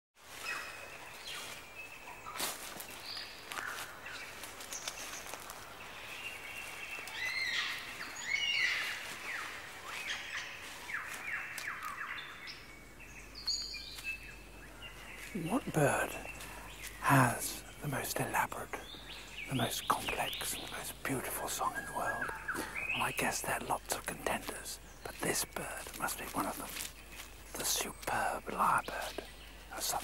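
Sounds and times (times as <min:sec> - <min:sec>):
birds whistling and chirping: 0:06.1 - 0:17.8, 0:21.4 - 0:23.4.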